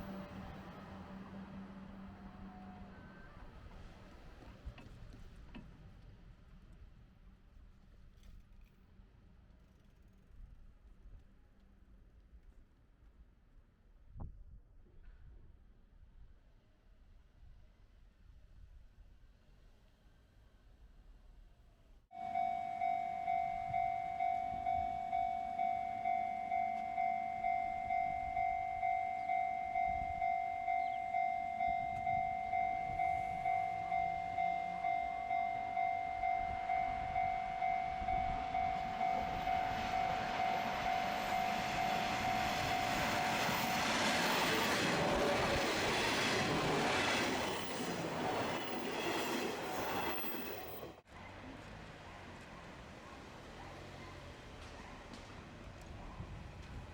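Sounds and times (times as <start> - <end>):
level crossing warning bell: 22.1 - 50.8
train wheels rumbling on rails: 23.7 - 56.9.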